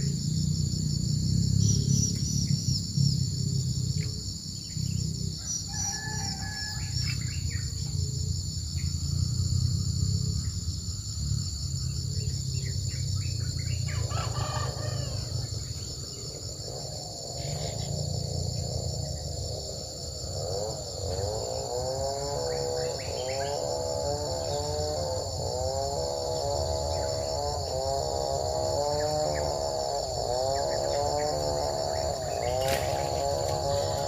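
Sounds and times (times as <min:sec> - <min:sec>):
high insect chorus: 0:00.0 - 0:34.0
rooster crowing: 0:05.4 - 0:07.2, 0:13.9 - 0:15.6.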